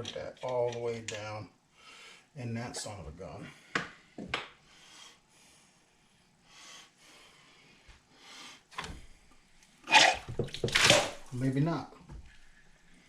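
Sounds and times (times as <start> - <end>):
person breathing: 1.7 - 2.3, 3.4 - 9.4.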